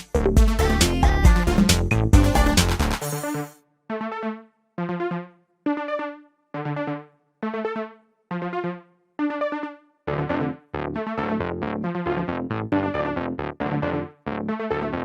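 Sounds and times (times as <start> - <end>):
bass line and beat: 0.0 - 3.3, 10.1 - 15.0
synthesizer chord stabs: 0.0 - 15.0.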